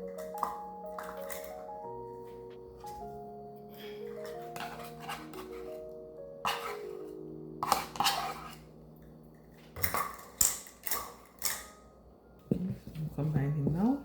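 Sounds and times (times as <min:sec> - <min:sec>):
background music: 0:00.0 - 0:14.0
utensil scraping mixing bowl: 0:04.0 - 0:08.7.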